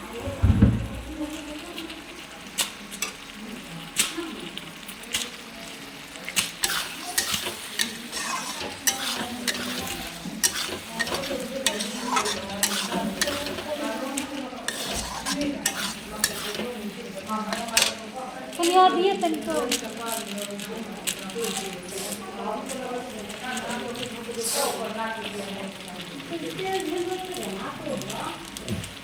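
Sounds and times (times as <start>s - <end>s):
vegetables sizzling in a pan: 0.0s - 29.0s
spatula scraping a pan: 6.3s - 18.0s.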